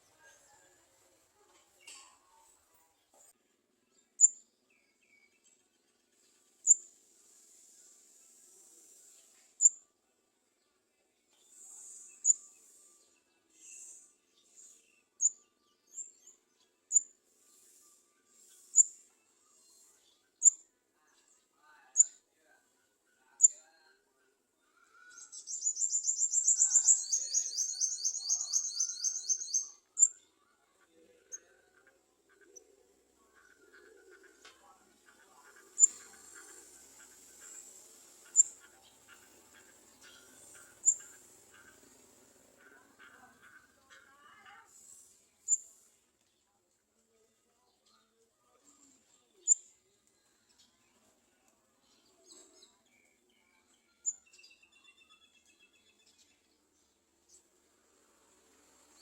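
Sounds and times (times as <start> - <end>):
faint soft chirping: 1.6 - 10.0, 11.3 - 57.5
soft hissing bursts: 6.6 - 9.7, 44.7 - 46.0
sharp high-pitched bird chirps: 11.8 - 12.6, 25.0 - 30.3, 38.2 - 41.8
birds chirping high: 23.4 - 46.5.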